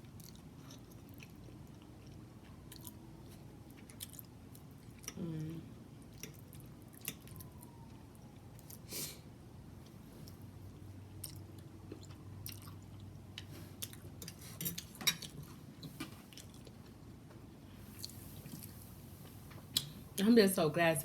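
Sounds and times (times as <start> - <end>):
person chewing food: 0.0 - 5.4, 6.0 - 8.8, 9.8 - 17.1, 17.9 - 18.8.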